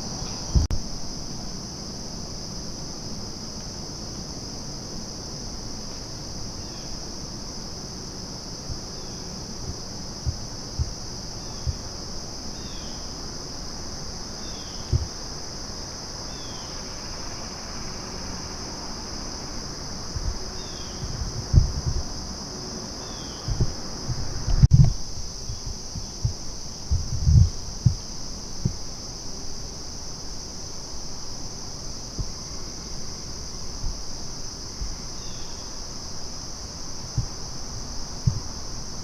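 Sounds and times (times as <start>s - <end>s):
crickets chirping chorus: 0.0s - 39.0s
low bumps: 21.0s - 22.1s.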